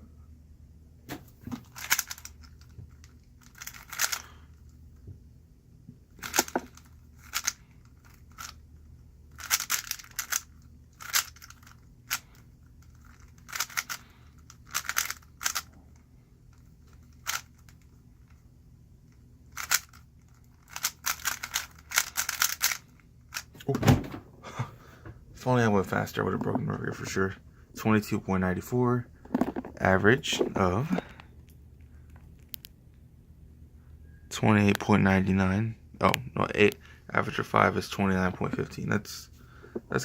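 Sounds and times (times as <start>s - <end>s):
plastic puzzle cube clicking: 1.7s - 2.6s, 3.4s - 4.2s, 6.2s - 8.5s, 9.4s - 12.2s, 13.0s - 15.7s, 17.2s - 17.6s, 19.6s - 20.0s, 20.6s - 23.4s.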